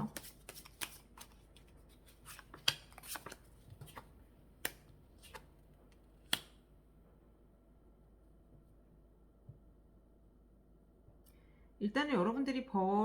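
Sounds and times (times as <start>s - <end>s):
cards shuffling and clicking: 0.0s - 6.6s.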